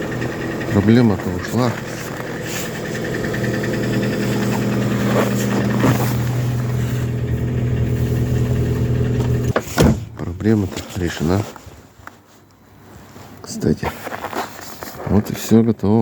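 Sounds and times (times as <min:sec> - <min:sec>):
car engine idling: 0:00.0 - 0:10.2.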